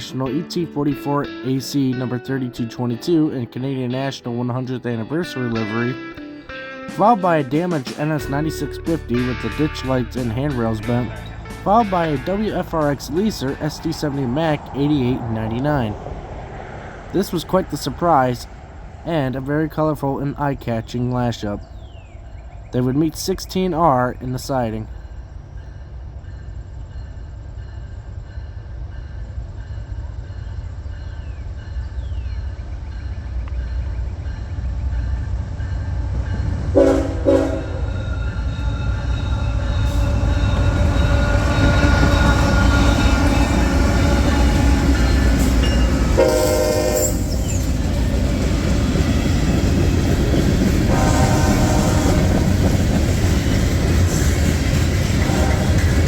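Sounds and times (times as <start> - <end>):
freight train passing: 0.0 - 56.0
locomotive horn blasts: 36.7 - 47.4, 50.9 - 52.6, 55.2 - 56.0.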